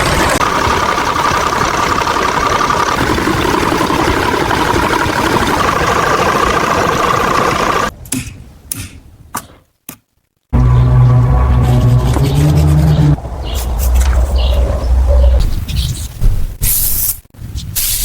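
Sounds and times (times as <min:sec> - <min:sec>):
car engine running: 0:00.0 - 0:07.9, 0:10.6 - 0:15.4.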